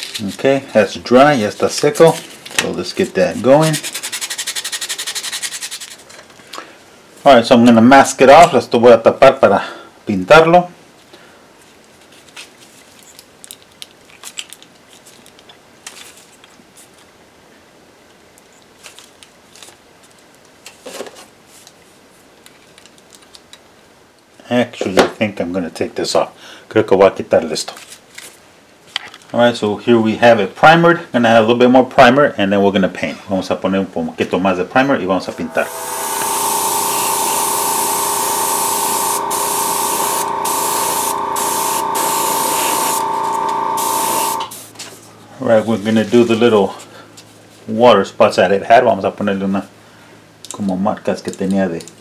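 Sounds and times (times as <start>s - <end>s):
tape rustling and clicking: 11.9s - 17.1s, 18.4s - 21.8s, 22.4s - 23.7s
aerosol spray can hissing: 35.7s - 44.7s.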